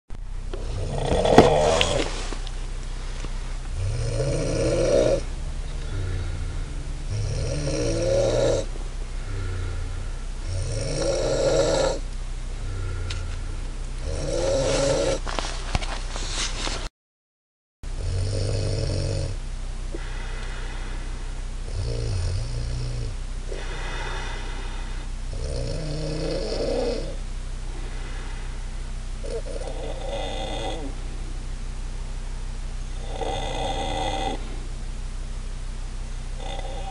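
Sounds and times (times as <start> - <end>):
quiet breathing out: 0.5 - 10.6, 12.6 - 15.3, 19.9 - 31.4
woman snoring: 0.6 - 2.3, 3.8 - 12.0, 12.6 - 13.4, 14.0 - 15.3, 18.0 - 19.4, 21.7 - 24.7, 25.4 - 27.2, 29.2 - 31.0, 33.0 - 34.6, 36.4 - 36.9.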